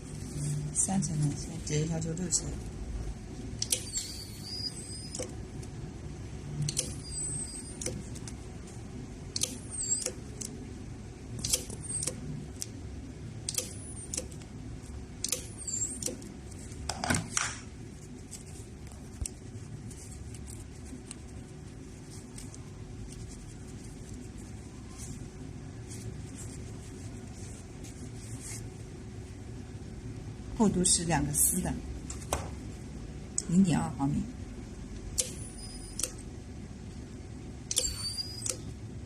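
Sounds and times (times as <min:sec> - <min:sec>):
steady low hum: 0:00.0 - 0:39.0
ultrasonic welder squealing: 0:03.6 - 0:05.3, 0:06.7 - 0:08.0, 0:09.4 - 0:10.2, 0:15.3 - 0:16.2, 0:35.2 - 0:36.2, 0:37.7 - 0:38.7.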